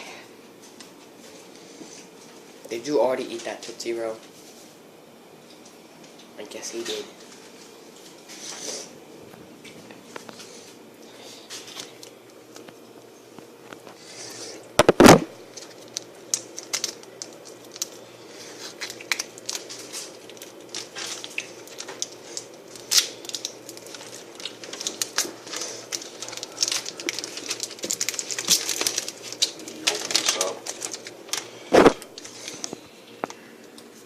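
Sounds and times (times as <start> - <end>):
plastic packets crinkling and tearing: 14.8 - 33.4.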